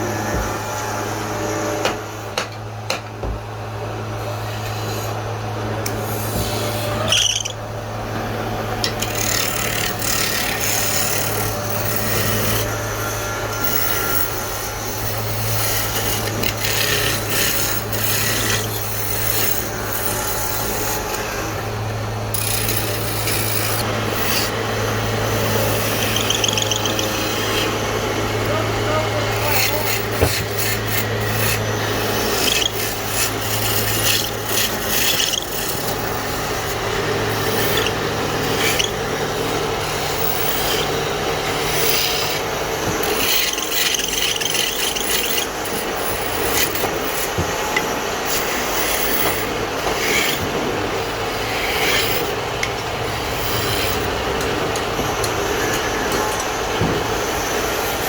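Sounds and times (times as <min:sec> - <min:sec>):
steady low hum: 0:00.0 - 0:58.0
wood scraping and rasping: 0:04.2 - 0:56.3.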